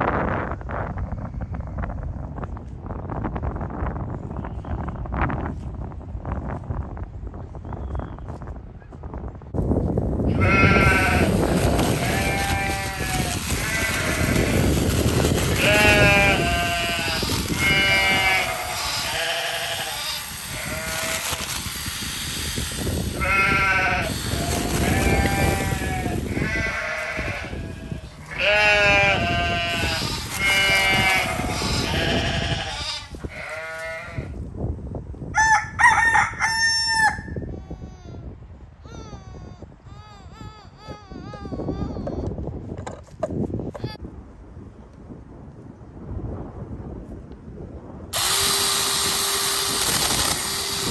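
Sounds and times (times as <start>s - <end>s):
farm animal calling: 10.3s - 14.8s, 15.4s - 21.4s, 23.1s - 34.3s.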